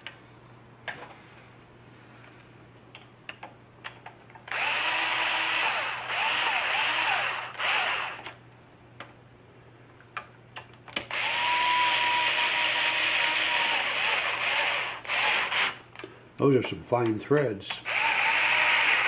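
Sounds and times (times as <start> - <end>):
power drill driving screws: 4.5 - 8.3, 11.1 - 15.8, 17.9 - 19.0.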